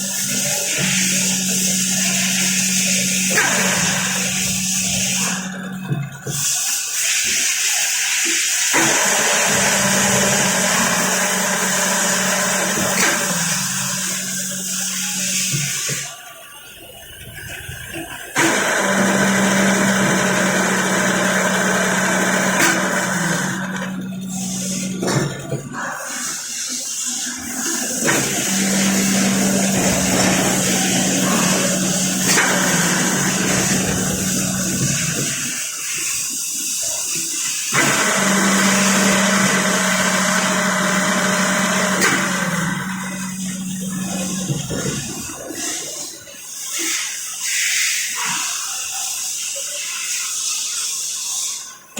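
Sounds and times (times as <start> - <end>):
machine motor humming: 0.0 - 6.4, 8.7 - 16.0, 18.1 - 26.2, 27.2 - 35.6, 37.7 - 45.7
machine hiss: 0.0 - 51.9.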